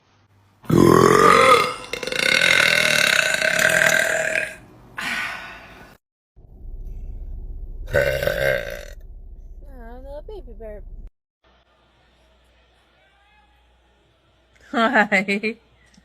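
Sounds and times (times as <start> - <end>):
woman burping: 0.7 - 4.6.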